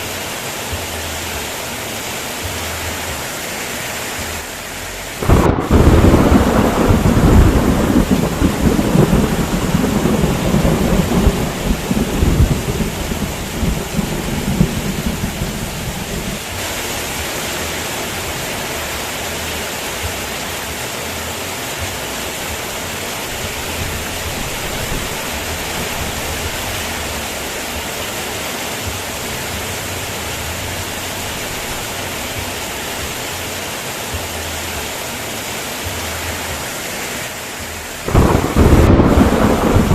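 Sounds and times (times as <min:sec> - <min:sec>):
heavy rain falling: 0:00.0 - 0:39.9
thunder crack and rumble: 0:05.2 - 0:16.5, 0:38.1 - 0:39.9.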